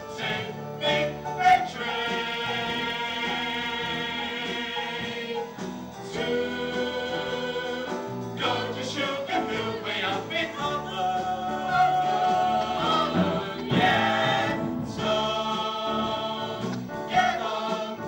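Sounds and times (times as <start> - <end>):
voices singing in harmony: 0.0 - 18.0.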